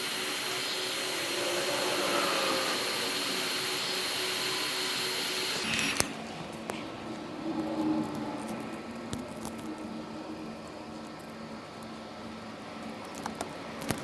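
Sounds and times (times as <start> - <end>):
hot-air blower running: 0.0 - 6.4.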